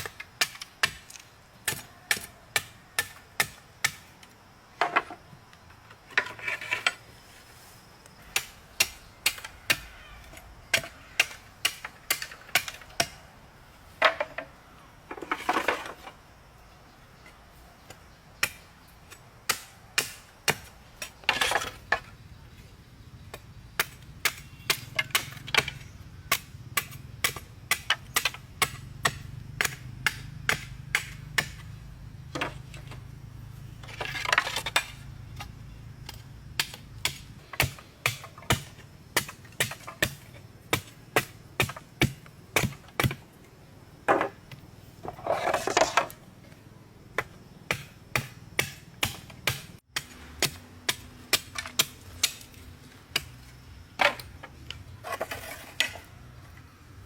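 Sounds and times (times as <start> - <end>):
hand tool striking wood or stone: 0.0 - 4.1, 23.3 - 31.7, 33.8 - 43.2, 47.2 - 52.5.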